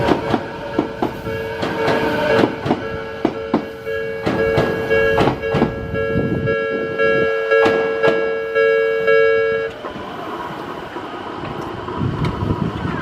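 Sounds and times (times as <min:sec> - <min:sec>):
train wheels knocking over rail joints: 0:00.0 - 0:06.0, 0:07.6 - 0:08.3
level crossing alarm ringing: 0:00.1 - 0:09.8.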